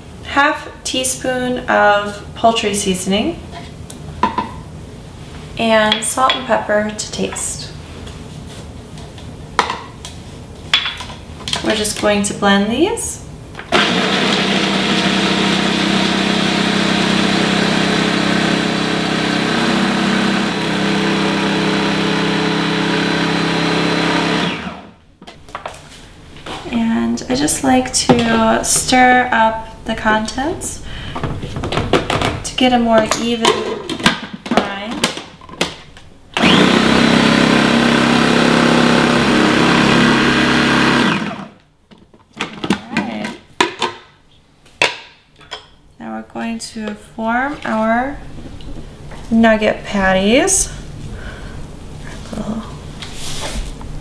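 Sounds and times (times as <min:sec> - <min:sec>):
food processor motor grinding: 0:13.7 - 0:25.0, 0:36.4 - 0:41.6.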